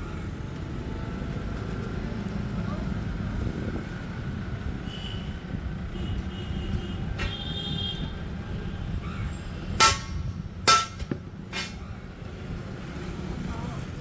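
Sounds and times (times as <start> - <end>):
hammer striking steel: 9.8 - 11.8.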